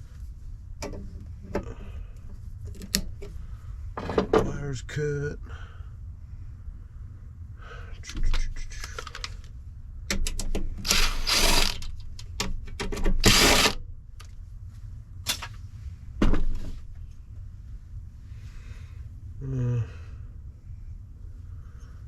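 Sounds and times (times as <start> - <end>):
metal scraping rattles: 10.9 - 12.0.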